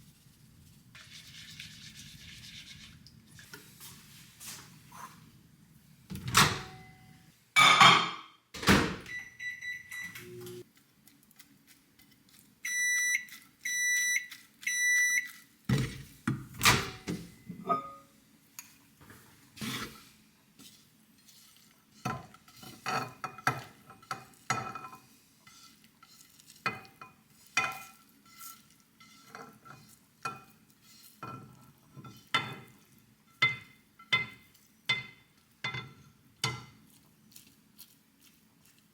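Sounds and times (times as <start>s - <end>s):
dishes and utensils clinking: 7.6s - 8.3s, 16.6s - 18.1s
appliance electronic beeps: 9.0s - 10.6s, 12.7s - 15.3s.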